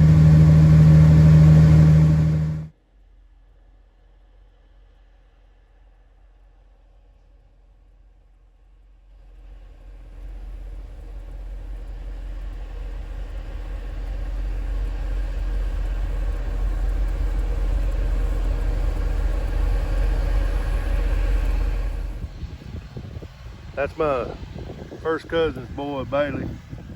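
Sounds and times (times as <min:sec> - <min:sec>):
vehicle engine rumbling: 0:00.0 - 0:02.7, 0:10.8 - 0:26.9.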